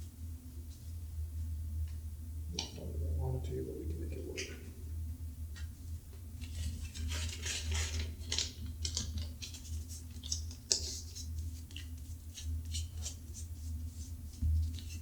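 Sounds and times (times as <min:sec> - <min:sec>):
tape rustling and crinkling: 0:06.4 - 0:13.5.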